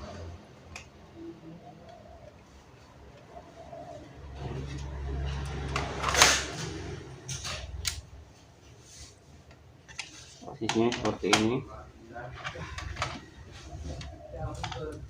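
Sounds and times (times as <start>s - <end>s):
laptop parts clicking: 7.3s - 8.1s.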